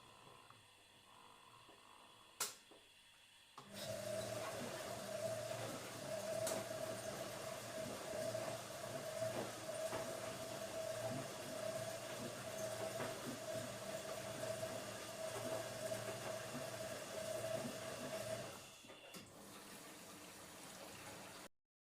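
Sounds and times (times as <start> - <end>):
washing machine motor hum: 0.0 - 21.5
water swishing in drum: 3.7 - 18.7.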